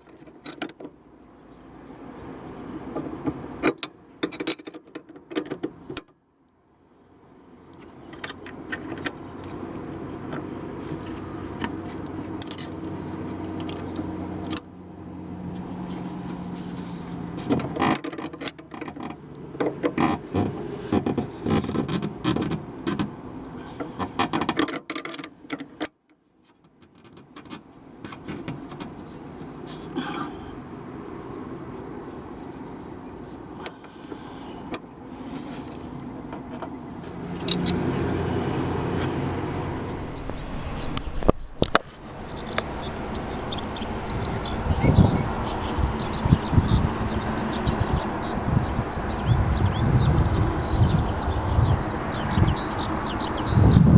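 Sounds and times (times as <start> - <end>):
car engine hum: 7.1 - 24.2, 27.9 - 53.9.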